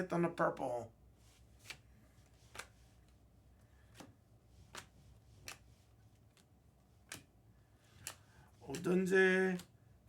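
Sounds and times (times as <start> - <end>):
cards being flipped clicking: 1.6 - 2.8, 3.9 - 5.7, 6.3 - 7.3.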